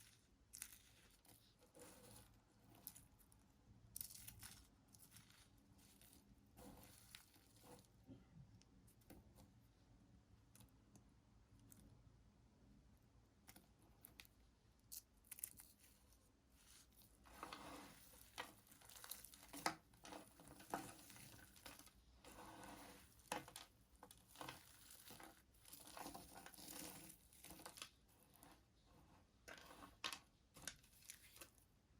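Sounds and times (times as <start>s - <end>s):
knife scraping through soap: 4.0s - 7.9s, 16.7s - 30.7s.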